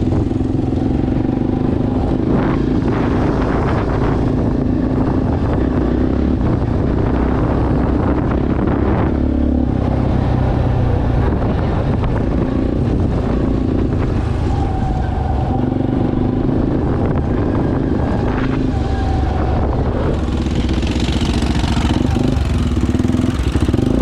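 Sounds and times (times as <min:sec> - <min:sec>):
atv engine running: 0:00.0 - 0:14.5, 0:15.4 - 0:24.0.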